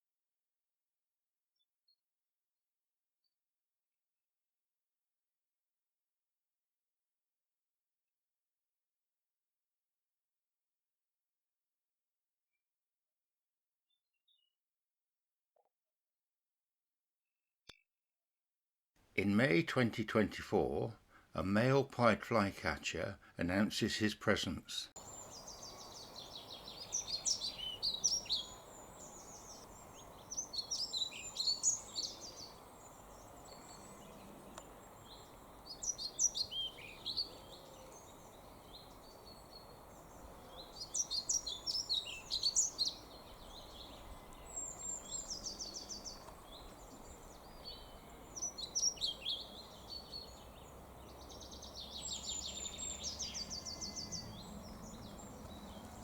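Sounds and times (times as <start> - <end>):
bird singing high sweet notes: 25.0 - 56.0.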